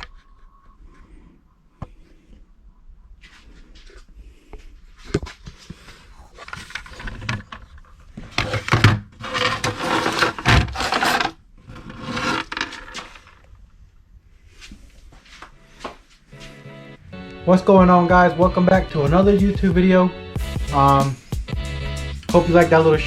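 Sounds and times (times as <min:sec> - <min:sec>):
rubbing and scraping handling noises: 0:00.0 - 0:13.6.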